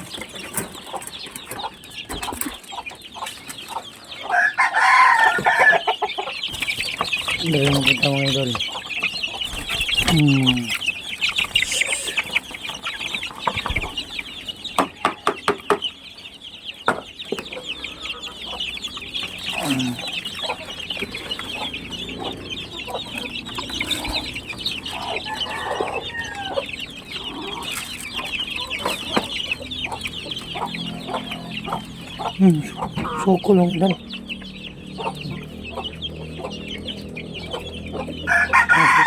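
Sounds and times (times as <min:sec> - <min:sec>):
chickens clucking: 0:00.0 - 0:39.0
fast high-pitched chatter: 0:11.5 - 0:12.2.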